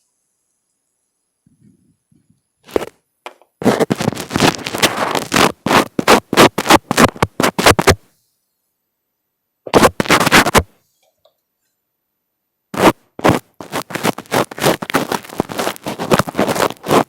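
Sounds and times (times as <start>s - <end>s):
fingers rubbing on microphone: 1.5s - 8.1s, 9.7s - 10.8s, 12.7s - 17.0s.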